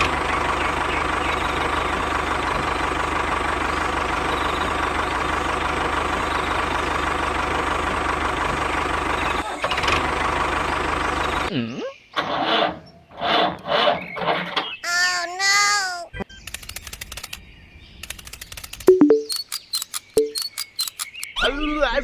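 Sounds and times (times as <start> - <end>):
engine running: 0.0 - 11.5.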